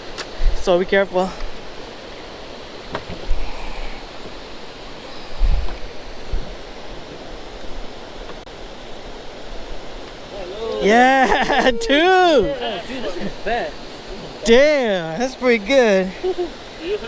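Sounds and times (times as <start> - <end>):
rain and wind over water: 0.0 - 17.0
dull low thumps: 5.2 - 6.7.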